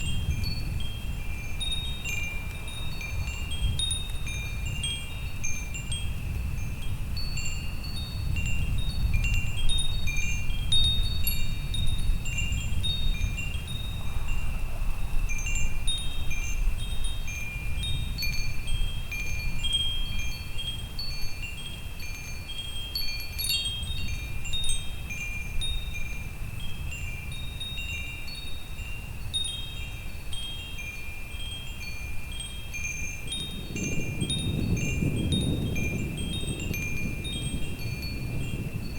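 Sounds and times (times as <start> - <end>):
wind chimes ringing: 0.0 - 38.9
low thunderstorm rumble: 33.5 - 38.9.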